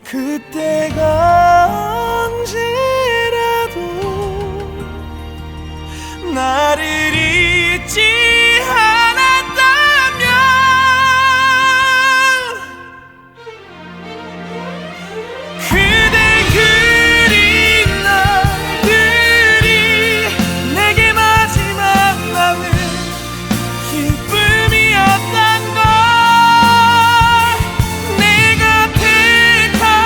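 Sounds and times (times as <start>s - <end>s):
loud band accompaniment: 15.4s - 30.0s
man singing high held notes: 15.6s - 23.2s.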